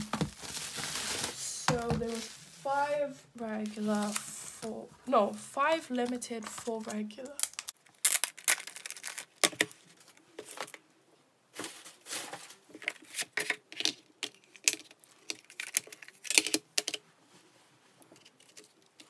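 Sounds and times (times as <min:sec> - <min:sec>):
rustles and scrapes: 0:00.0 - 0:04.9, 0:11.5 - 0:13.6.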